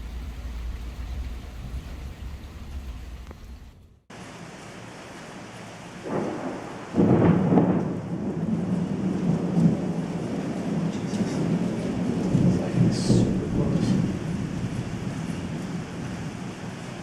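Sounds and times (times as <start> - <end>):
thunder rumbling: 0.0 - 4.1, 6.0 - 17.0
steady rain: 0.0 - 17.0
thunderclap: 6.0 - 17.0.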